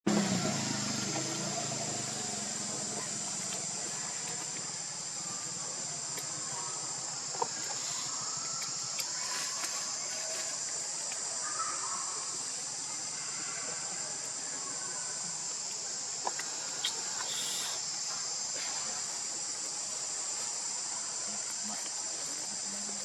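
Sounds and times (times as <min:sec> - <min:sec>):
high-pitched insect chorus: 0:00.1 - 0:23.0.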